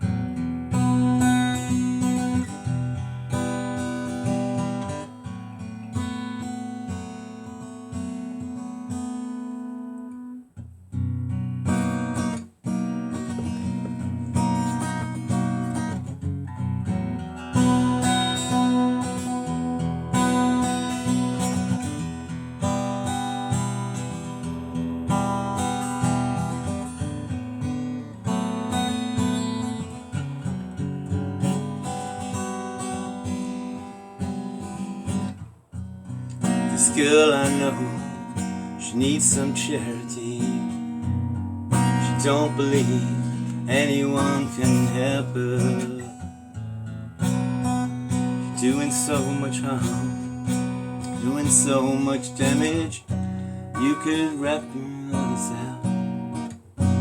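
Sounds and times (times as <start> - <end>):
acoustic guitar strumming chords: 0.0 - 57.0.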